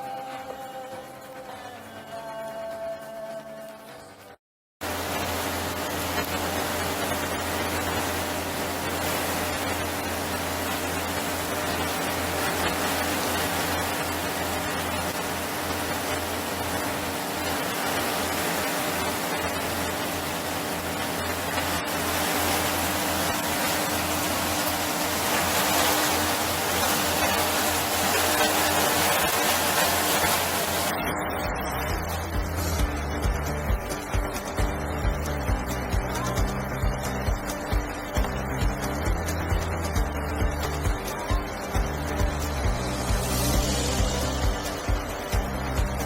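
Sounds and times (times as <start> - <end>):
low motor hum: 0.0 - 46.0
water rushing: 5.1 - 31.0.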